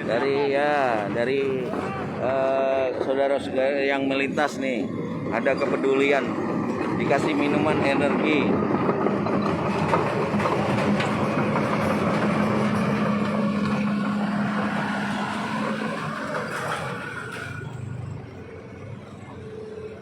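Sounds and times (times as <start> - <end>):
motor vehicle passing: 9.7 - 20.0.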